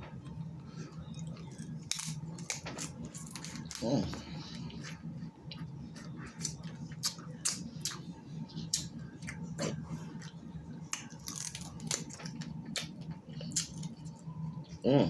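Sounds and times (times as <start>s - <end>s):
wet clicks and smacks of eating: 6.4s - 8.0s, 8.6s - 14.2s.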